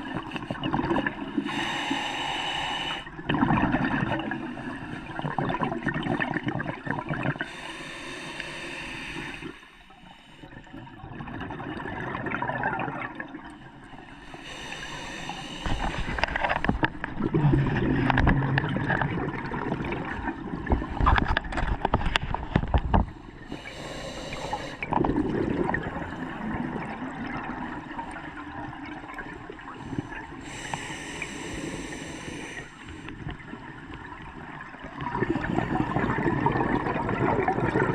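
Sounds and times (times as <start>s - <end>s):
exhaled bubbles gurgling: 0.0s - 37.9s
hissing regulator inhale: 1.4s - 3.1s, 7.4s - 10.6s, 14.1s - 17.1s, 23.2s - 25.0s, 29.8s - 33.4s.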